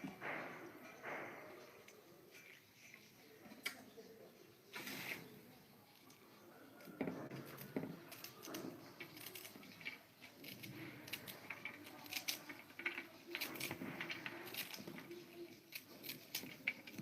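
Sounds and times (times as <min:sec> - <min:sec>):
chewing and crunching: 0:06.8 - 0:17.0
crisp clicks and crackles: 0:06.8 - 0:17.0.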